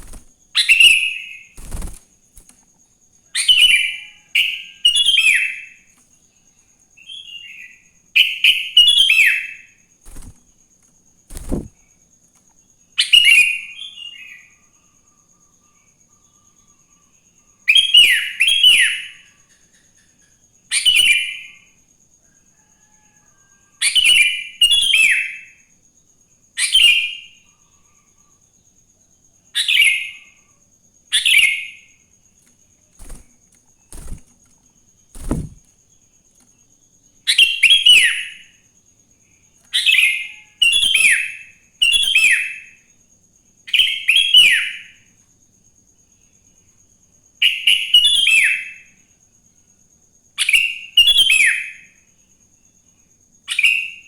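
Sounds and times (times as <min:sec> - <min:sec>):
soft thumps: 0:35.2 - 0:35.7.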